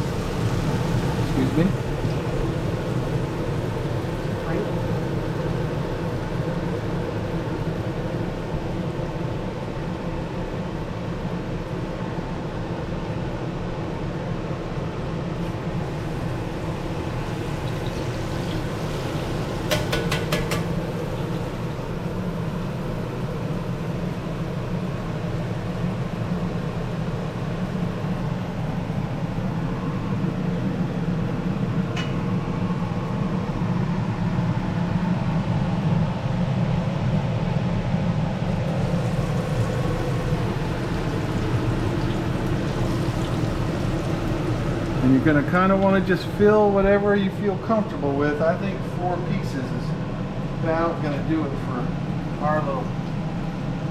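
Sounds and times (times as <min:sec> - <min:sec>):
fish frying in oil: 0:00.0 - 0:10.4, 0:15.5 - 0:28.6, 0:38.4 - 0:46.1.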